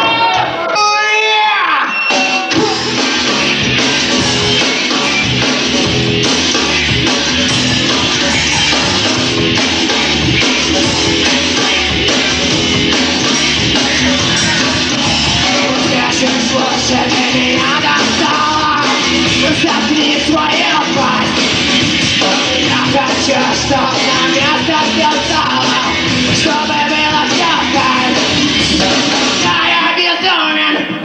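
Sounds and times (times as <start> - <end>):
person shouting singing: 0.0 - 3.1, 11.1 - 21.4, 22.2 - 28.3, 29.3 - 30.7
rock band playing punk: 0.0 - 31.0.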